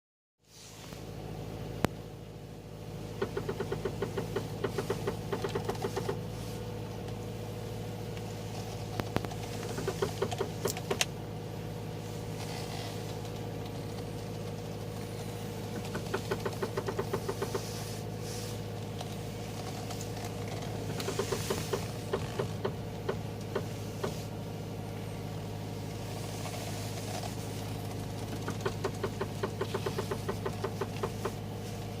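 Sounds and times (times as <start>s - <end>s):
car engine hum: 0.4s - 32.0s
rapid engine knocking: 3.1s - 6.4s, 8.7s - 11.1s, 12.5s - 24.3s, 26.0s - 32.0s.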